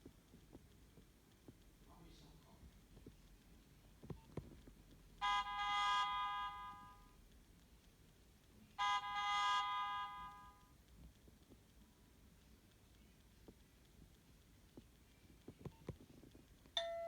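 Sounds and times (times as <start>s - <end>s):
mobile phone ringtone: 5.2s - 7.1s, 8.8s - 10.6s.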